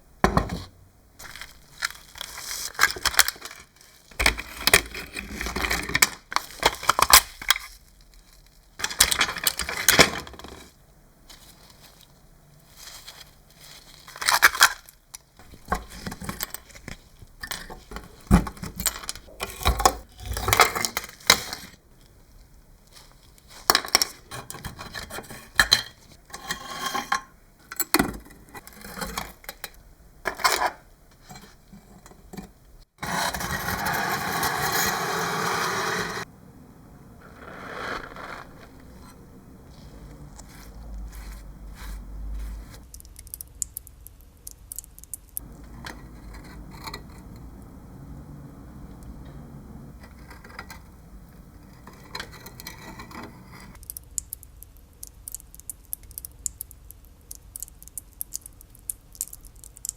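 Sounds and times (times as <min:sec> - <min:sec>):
small hard parts clinking: 0:01.2 - 0:10.7, 0:44.7 - 0:54.0.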